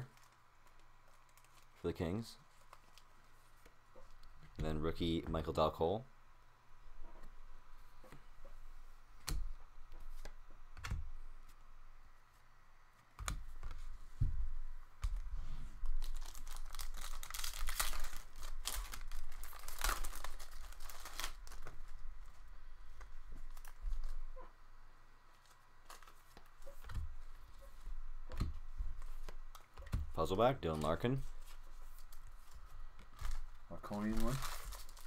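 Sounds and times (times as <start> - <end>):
foil wrapper tearing and crinkling: 15.9 - 21.8, 33.2 - 35.0.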